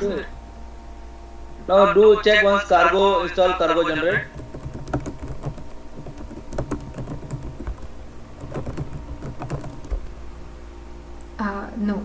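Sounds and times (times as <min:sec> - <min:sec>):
low electrical hum: 0:00.0 - 0:12.0
keyboard key clicks: 0:04.3 - 0:10.0.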